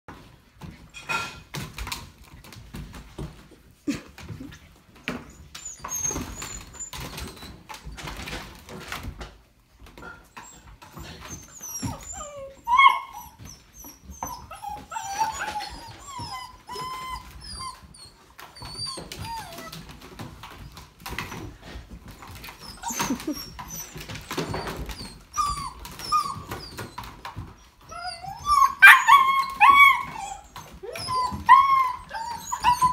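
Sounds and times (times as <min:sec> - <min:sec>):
puppies whimpering: 0:05.1 - 0:08.4, 0:10.3 - 0:32.9.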